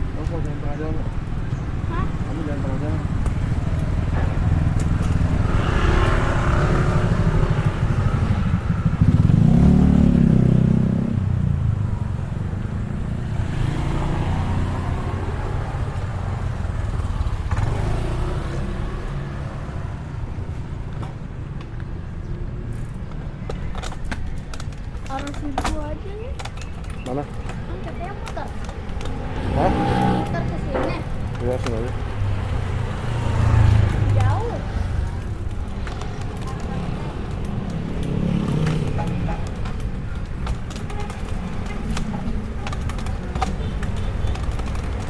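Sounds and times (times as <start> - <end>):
road traffic rumble: 0.0 - 45.0
motor vehicle passing close: 3.4 - 20.2, 28.7 - 45.0.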